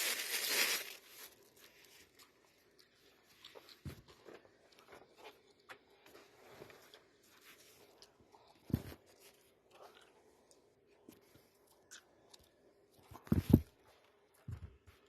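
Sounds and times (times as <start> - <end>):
packaging crinkling: 0.0 - 2.0.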